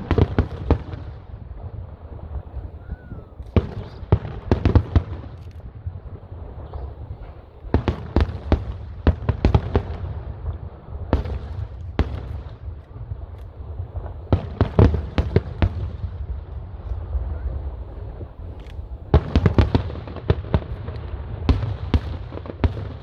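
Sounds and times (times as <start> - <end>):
low rumble of fireworks barrage: 0.0 - 23.0
firework shells bursting: 2.1 - 10.0.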